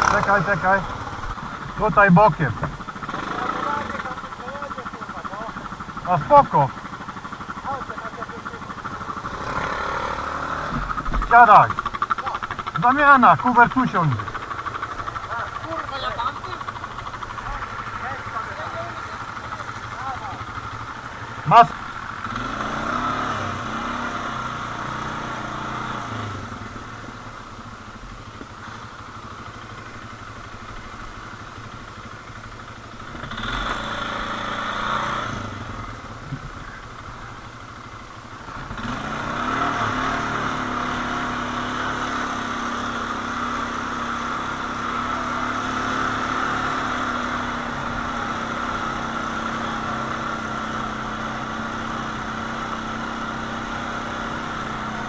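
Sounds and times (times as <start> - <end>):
quad bike engines running: 0.0 - 55.0.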